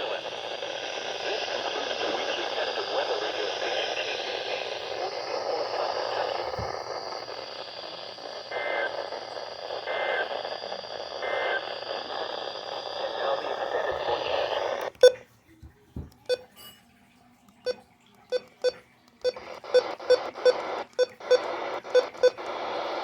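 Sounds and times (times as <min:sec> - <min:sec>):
radio hiss and static: 0:00.0 - 0:15.2, 0:17.7 - 0:23.0
short two-tone beeps: 0:16.2 - 0:16.6, 0:17.7 - 0:22.4.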